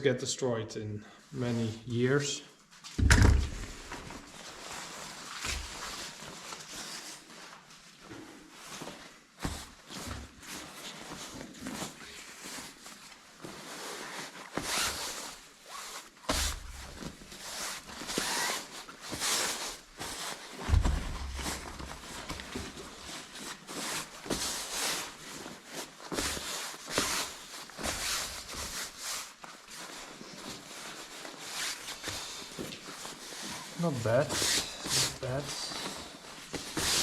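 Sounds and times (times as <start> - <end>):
fabric rustling: 2.7 - 37.0
knocks and thump: 3.0 - 3.9, 20.7 - 21.8.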